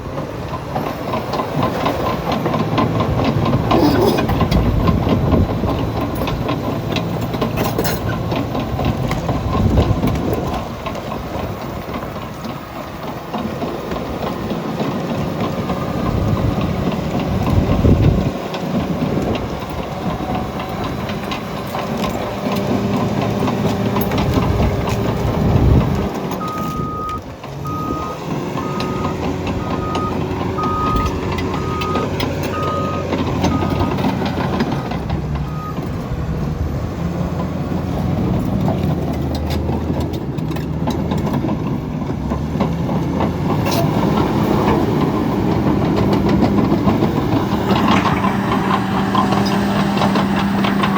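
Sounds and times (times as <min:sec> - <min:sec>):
bulldozer diesel engine under load: 0:00.0 - 0:50.9
tracks clanking: 0:00.0 - 0:50.9
reverse alarm beeping: 0:26.4 - 0:34.0.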